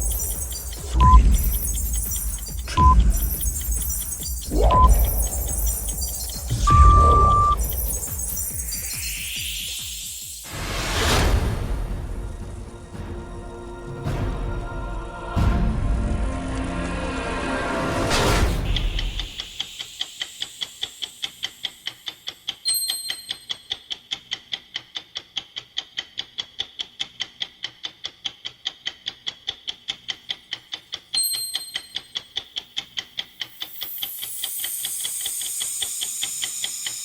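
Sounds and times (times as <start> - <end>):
bright ring: 0.0 - 10.3, 18.8 - 23.9, 31.2 - 32.6, 33.4 - 37.0
fast clock ticking: 0.0 - 10.4
rising whoosh: 2.7 - 12.5.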